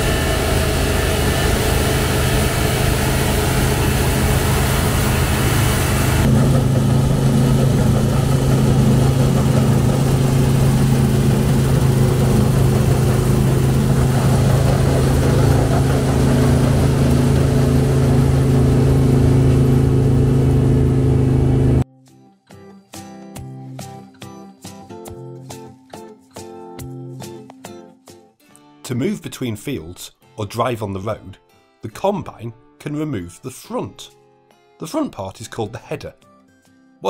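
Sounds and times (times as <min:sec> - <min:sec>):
combine harvester running: 0:00.0 - 0:21.8.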